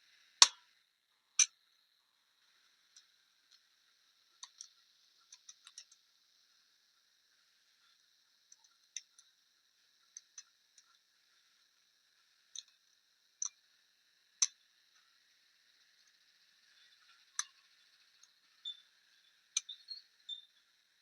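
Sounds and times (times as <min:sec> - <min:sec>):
light clicks and taps of parts: 0:04.4 - 0:06.0, 0:12.5 - 0:12.8.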